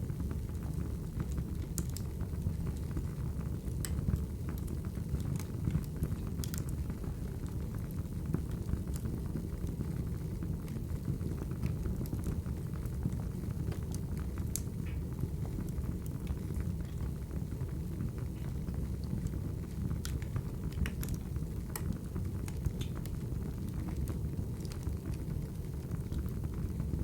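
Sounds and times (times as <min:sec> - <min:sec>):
wood fire crackling: 0:00.1 - 0:27.0
pops and snaps of burning logs: 0:01.3 - 0:02.1, 0:03.7 - 0:06.7, 0:13.7 - 0:15.0, 0:19.0 - 0:25.3.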